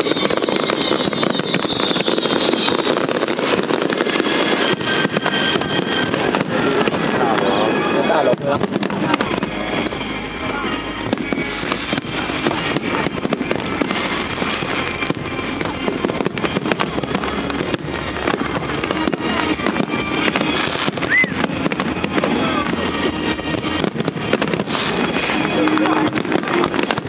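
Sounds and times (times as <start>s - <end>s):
fireworks bangs and crackles: 0.0s - 27.0s.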